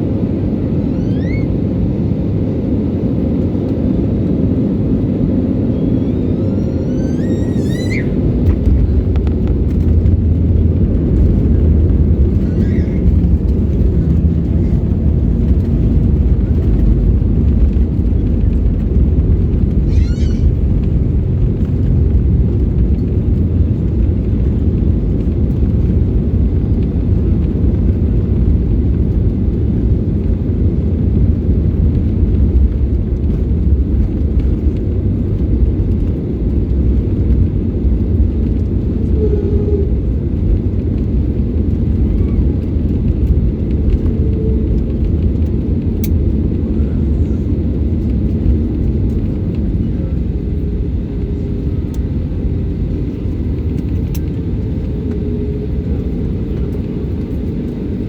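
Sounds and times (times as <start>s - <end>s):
airliner cabin rumble: 0.0s - 58.0s
high wavering squeak: 5.8s - 8.2s.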